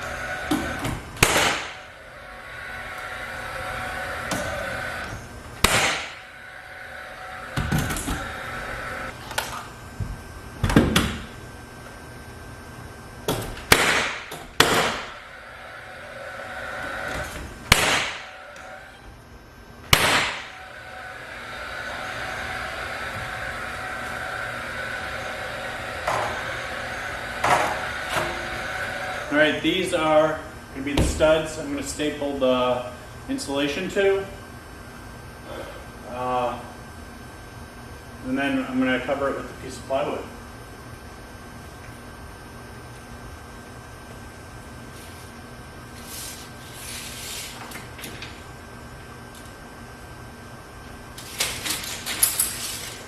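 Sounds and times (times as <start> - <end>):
mechanical whir and hiss: 0.0 - 9.4, 13.3 - 33.8, 45.0 - 49.4
sharp crack with ringing tail: 1.2 - 1.8, 13.7 - 15.1, 17.7 - 18.3, 19.9 - 20.6.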